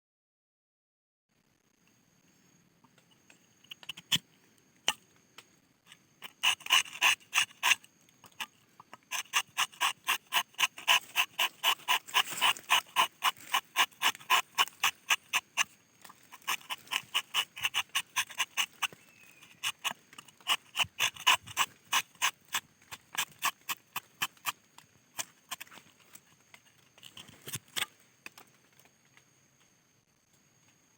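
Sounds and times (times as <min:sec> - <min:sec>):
knife scraping tree bark: 0:03.7 - 0:04.2, 0:05.9 - 0:28.5.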